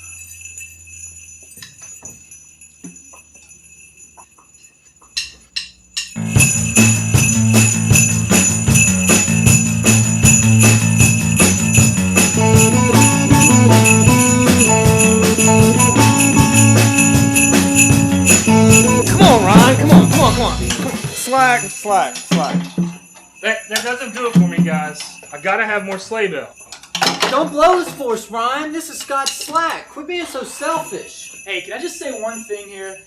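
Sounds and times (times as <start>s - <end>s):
sleigh bells jingling: 0.0s - 33.0s
band music: 6.2s - 21.7s.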